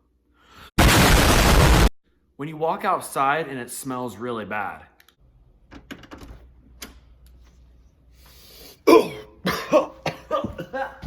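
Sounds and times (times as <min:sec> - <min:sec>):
person coughing: 0:08.8 - 0:11.0.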